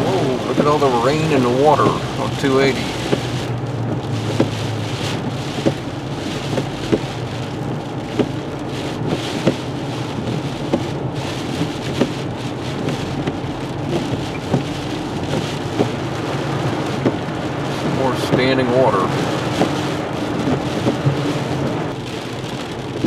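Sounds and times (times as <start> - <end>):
heavy rain pelting a car: 0.0 - 23.0
tyres hissing on flooded road: 0.0 - 23.0.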